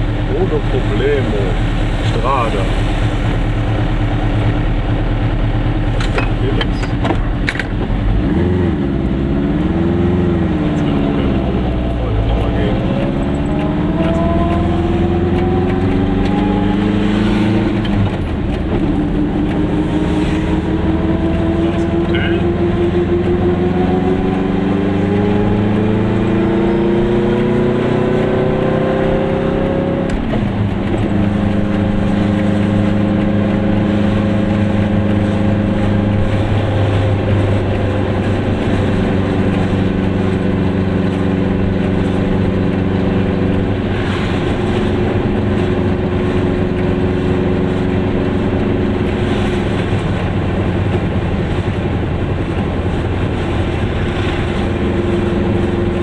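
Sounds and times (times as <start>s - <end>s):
two-stroke car engine accelerating: 0.0s - 56.0s
tyre and road noise: 0.0s - 56.0s.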